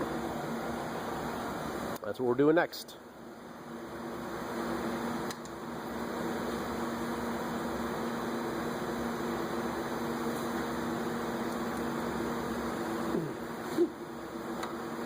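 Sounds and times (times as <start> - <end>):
machine motor humming: 3.4 - 15.0.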